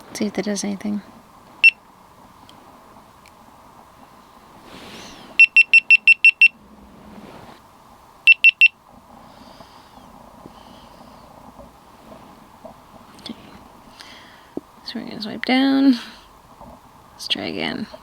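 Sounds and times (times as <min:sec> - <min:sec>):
camera beeping quick high beeps: 0:05.4 - 0:06.6, 0:08.3 - 0:08.7.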